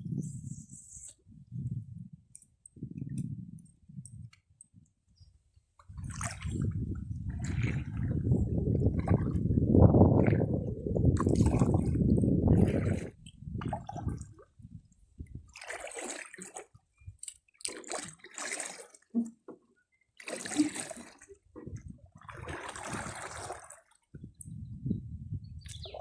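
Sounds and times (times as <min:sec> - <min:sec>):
water splashing against canoe hull: 0:05.8 - 0:24.2.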